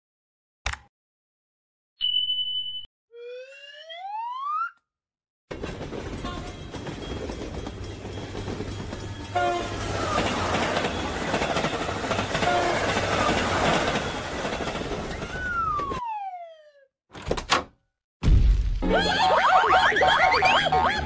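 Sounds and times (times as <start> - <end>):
train rushing rumble: 5.5 - 15.9
train horn toots: 9.3 - 9.9, 12.3 - 13.0
falling whistle: 15.1 - 16.7.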